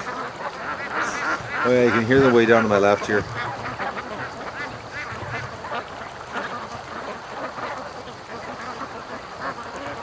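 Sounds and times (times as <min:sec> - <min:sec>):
ducks quacking in distance: 0:00.0 - 0:10.0.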